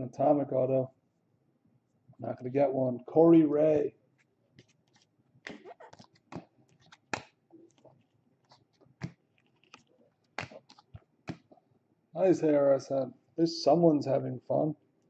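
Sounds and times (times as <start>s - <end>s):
trading cards clicking and rustling: 4.6s - 11.5s.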